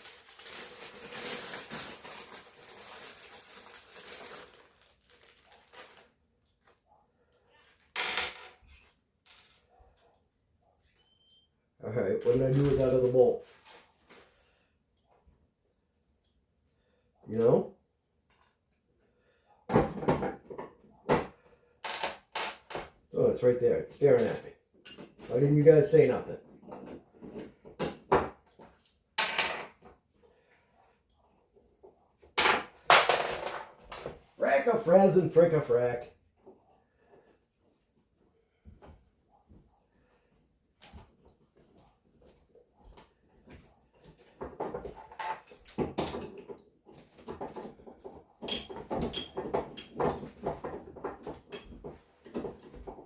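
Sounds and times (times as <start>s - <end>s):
metal hardware clinking: 48.4s - 50.3s.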